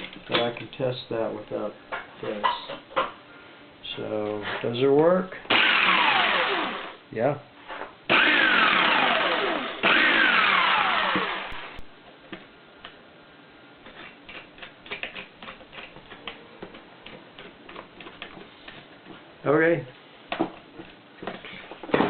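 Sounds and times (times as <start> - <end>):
jigsaw motor running: 5.5 - 7.0, 8.1 - 11.8.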